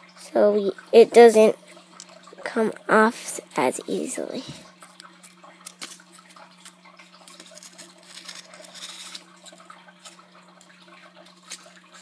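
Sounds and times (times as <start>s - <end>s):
rustling of craft scraps: 7.3s - 10.2s.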